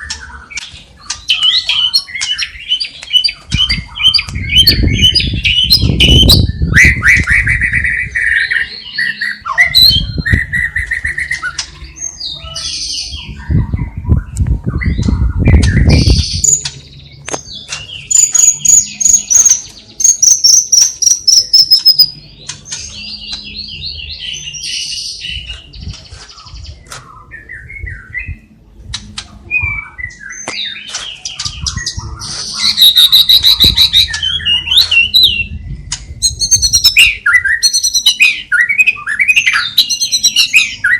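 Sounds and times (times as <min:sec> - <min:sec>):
songbirds chirping and singing: 0:00.0 - 0:40.9
low rumbling noise: 0:31.2 - 0:36.9.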